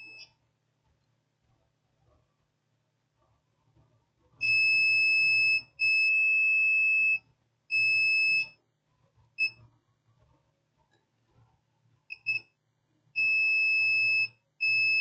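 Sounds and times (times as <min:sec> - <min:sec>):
multimeter beeping: 0:00.0 - 0:00.3, 0:13.2 - 0:15.0.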